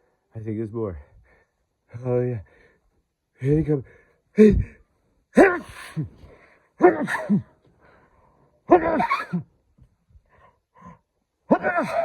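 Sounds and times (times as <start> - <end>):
man sneezing: 6.8 - 7.5, 8.8 - 9.5.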